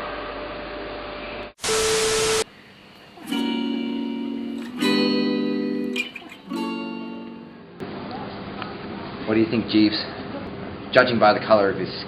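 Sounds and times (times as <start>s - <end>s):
static hiss: 1.6s - 3.4s
strummed guitar chords: 3.0s - 7.8s.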